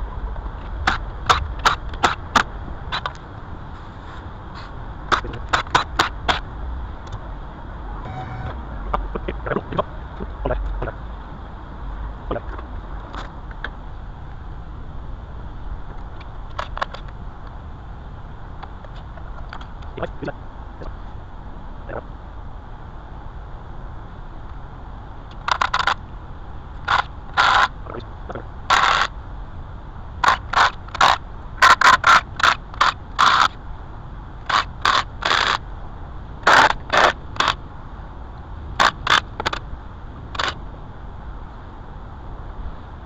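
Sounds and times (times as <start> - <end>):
low background hum: 0.0 - 43.0
short scraping strokes: 8.0 - 8.7.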